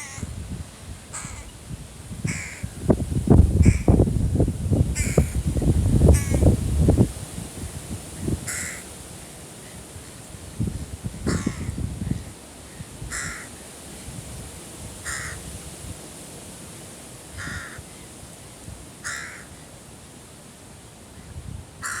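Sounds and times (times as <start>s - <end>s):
crow cawing: 0.0s - 0.3s, 1.1s - 1.5s, 2.3s - 2.7s, 3.6s - 4.0s, 5.0s - 5.4s, 6.1s - 6.4s, 8.5s - 8.9s, 11.3s - 11.8s, 13.1s - 13.6s, 15.0s - 15.4s, 17.4s - 18.0s, 19.0s - 19.6s.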